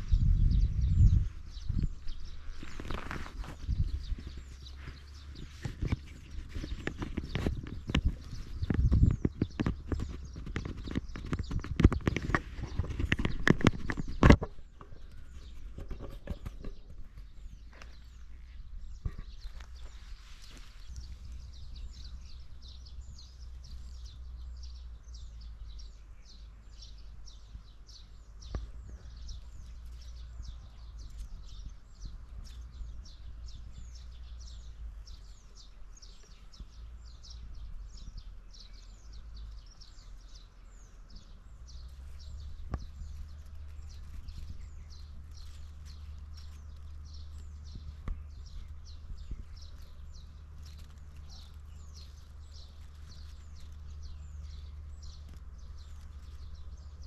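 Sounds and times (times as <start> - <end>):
low rumble: 0.0 - 10.4
birds chirping: 0.0 - 57.0.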